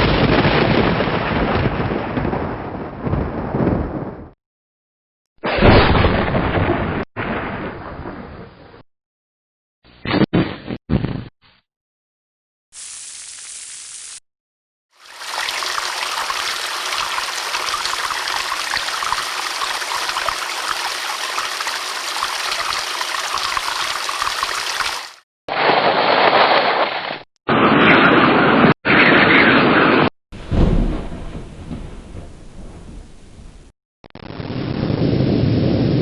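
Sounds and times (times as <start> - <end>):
bursts of rushing noise: 15.0 - 25.2
heavy rain hissing: 15.0 - 25.2.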